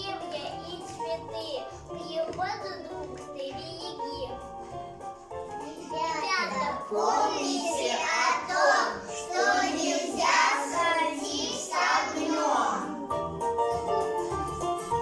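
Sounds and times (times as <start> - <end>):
instrumental backing music: 0.0 - 15.0
children singing: 5.8 - 13.1.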